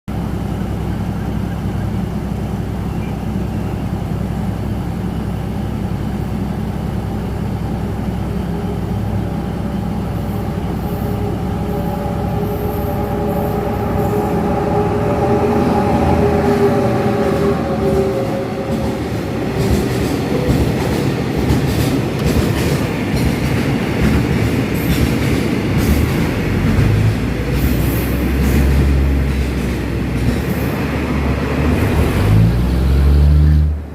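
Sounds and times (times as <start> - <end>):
train engine rumble: 0.1 - 33.9
whining tone: 8.2 - 21.2
wheels clacking over rail joints: 16.6 - 32.2.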